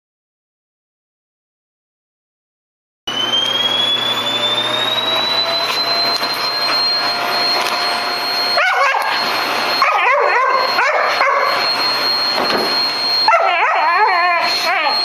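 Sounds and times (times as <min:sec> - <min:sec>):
vacuum cleaner whining: 0:03.1 - 0:15.0
dog barking and yipping: 0:08.4 - 0:12.1, 0:13.2 - 0:15.0.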